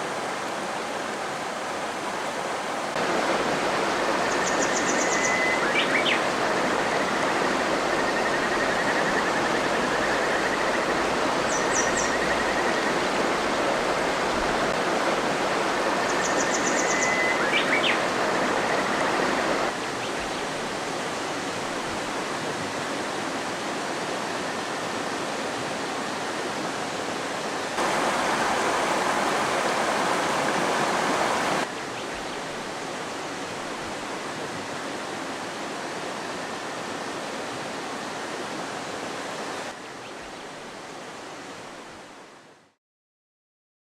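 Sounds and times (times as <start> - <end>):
river babbling over rocks: 9.6 - 19.9, 20.5 - 31.8.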